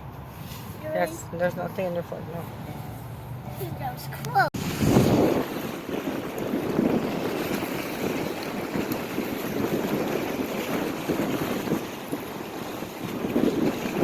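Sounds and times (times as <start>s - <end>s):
wind buffeting microphone: 0.0s - 14.0s
waves washing onto shore: 4.6s - 14.0s.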